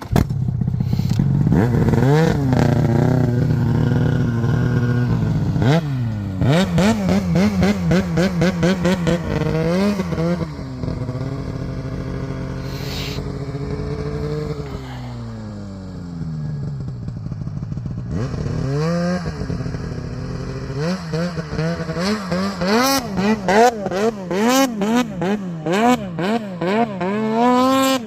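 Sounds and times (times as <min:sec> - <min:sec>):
snowmobile engine revving: 0:00.0 - 0:28.0.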